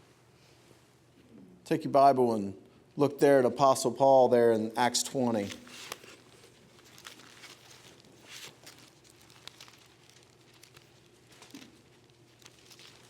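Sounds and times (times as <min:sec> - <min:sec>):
low steady hum: 0:00.0 - 0:13.0
thin pages turning: 0:05.3 - 0:13.0.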